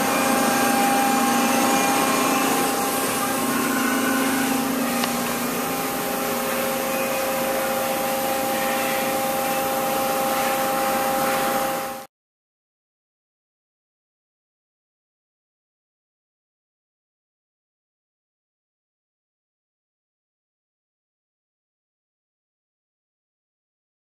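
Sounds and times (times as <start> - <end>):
held tones: 0.0 - 12.0
machine hum and hiss: 0.0 - 12.1.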